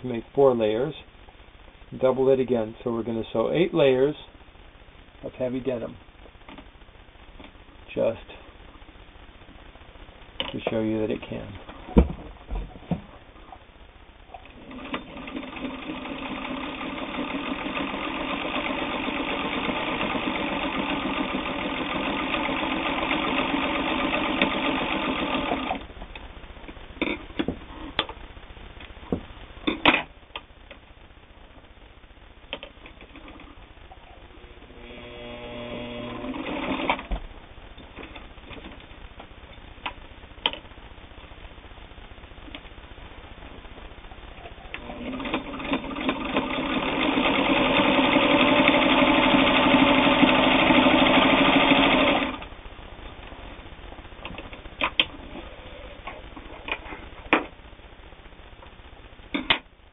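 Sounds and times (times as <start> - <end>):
sewing machine stitching: 14.5 - 25.8, 34.9 - 37.1, 44.8 - 52.5.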